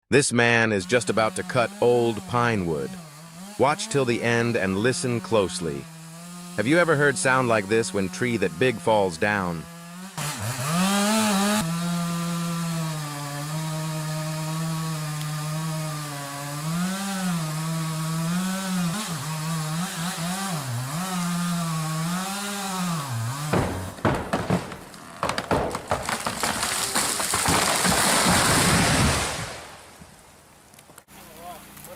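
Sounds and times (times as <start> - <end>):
chainsaw cutting wood: 0.8 - 30.2
tree trunk cracking: 9.8 - 31.1
tree crashing to the ground: 23.2 - 30.0.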